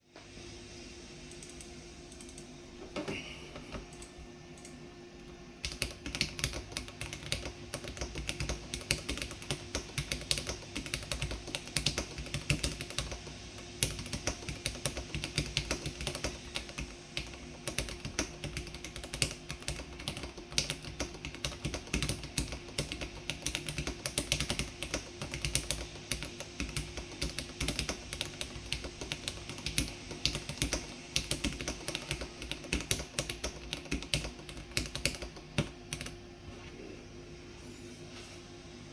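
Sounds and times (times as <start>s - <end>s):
mechanical keyboard typing: 5.6s - 36.2s.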